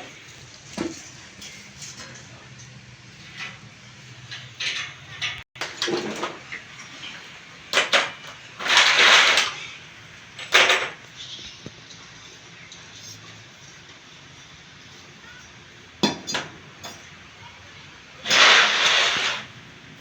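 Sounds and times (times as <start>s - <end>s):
scraping on a bed base: 18.2s - 19.6s.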